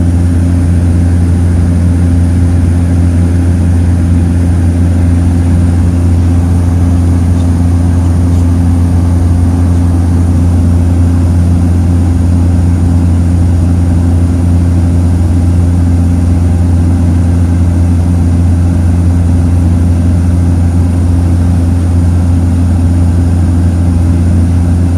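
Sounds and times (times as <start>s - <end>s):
propeller plane engine drone: 0.0s - 24.9s.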